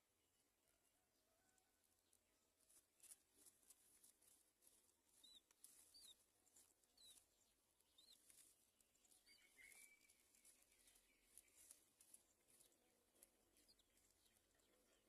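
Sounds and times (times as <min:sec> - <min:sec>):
faint high bird chirps: 0:05.1 - 0:15.0.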